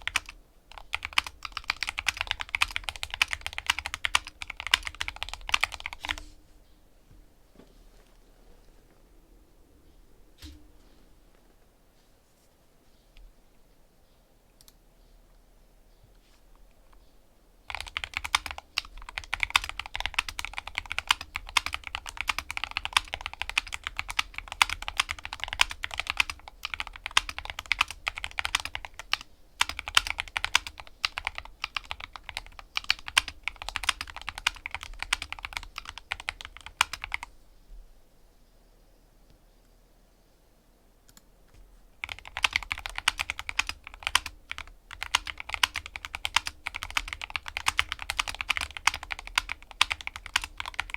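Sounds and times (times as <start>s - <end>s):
fast typing on keyboard: 0.0s - 6.2s, 17.7s - 37.3s, 42.0s - 50.9s.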